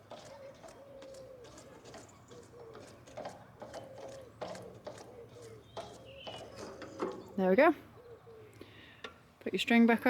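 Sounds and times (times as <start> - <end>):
pigeon cooing: 0.1 - 3.0, 3.6 - 6.7, 7.9 - 8.6.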